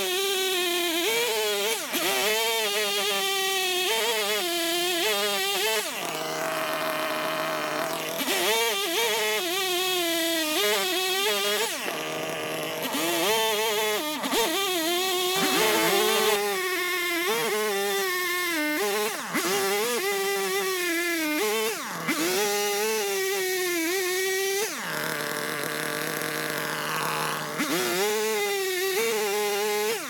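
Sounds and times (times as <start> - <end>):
chainsaw cutting a log: 0.0 - 30.0.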